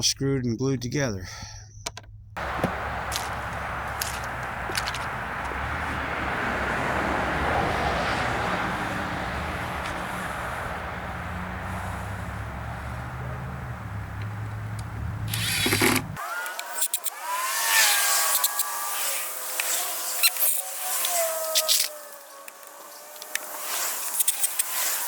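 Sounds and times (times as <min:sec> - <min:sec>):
chainsaw cutting a log: 0:15.3 - 0:25.0.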